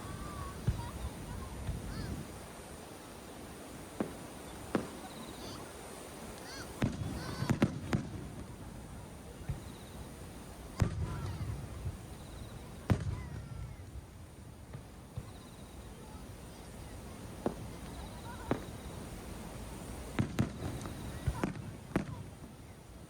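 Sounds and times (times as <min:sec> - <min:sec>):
small fireworks pops: 0:00.0 - 0:02.4, 0:03.9 - 0:05.7, 0:06.3 - 0:22.9
fireworks shells bursting: 0:03.9 - 0:08.6, 0:17.4 - 0:22.3.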